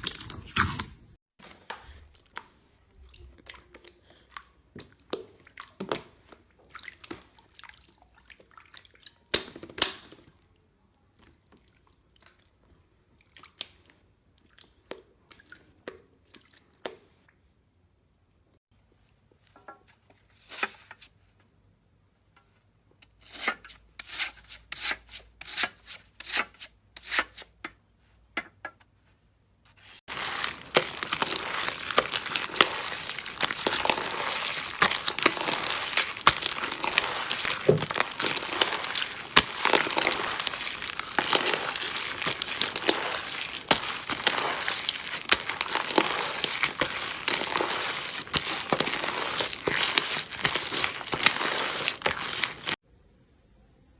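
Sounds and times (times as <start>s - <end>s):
slime squishing and crackling: 30.1s - 52.8s.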